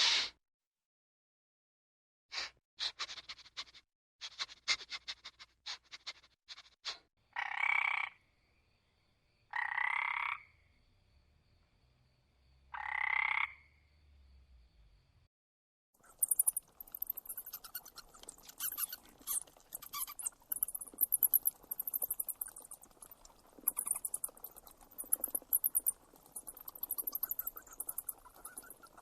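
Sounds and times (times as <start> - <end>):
small animal squeaking: 16.0 - 29.0.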